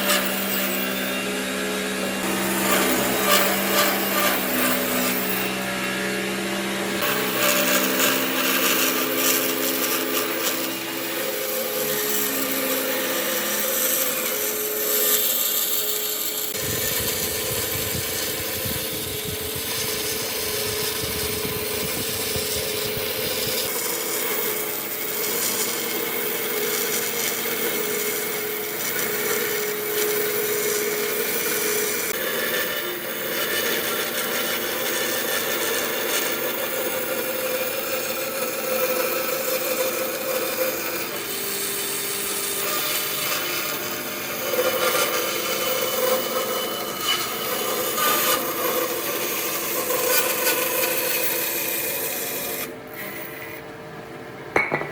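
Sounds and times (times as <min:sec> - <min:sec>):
power tool motor whine: 0:00.0 - 0:53.6
tool grinding wood: 0:00.0 - 0:53.7.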